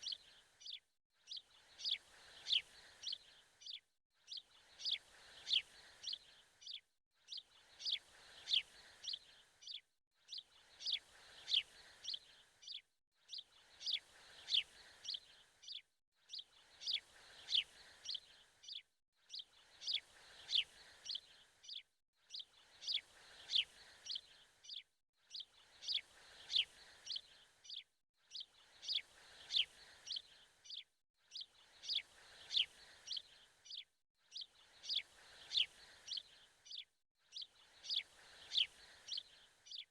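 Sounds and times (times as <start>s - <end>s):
birds chirping: 0.0s - 3.8s, 19.8s - 30.8s, 31.8s - 33.8s, 34.8s - 36.8s, 37.4s - 39.9s.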